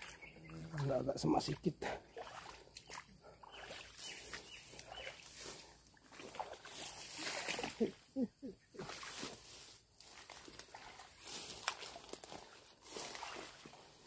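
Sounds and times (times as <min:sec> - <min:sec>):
leaves and branches rustling: 0:03.8 - 0:14.0.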